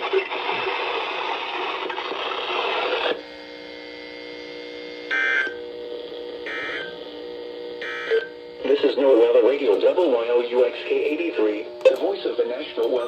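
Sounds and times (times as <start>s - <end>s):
radio hiss: 0.0s - 3.2s, 8.6s - 13.0s
faint hum: 0.0s - 13.0s.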